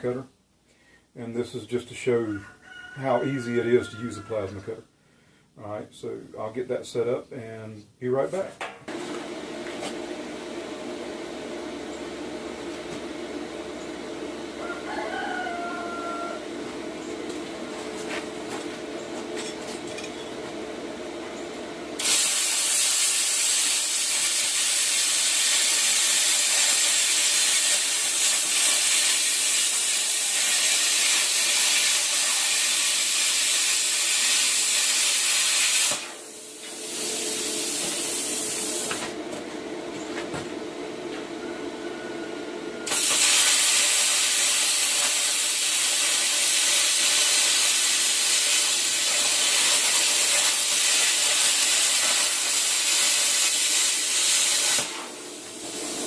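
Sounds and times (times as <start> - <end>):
plasma cutter hissing: 22.0 - 39.0, 42.8 - 56.0.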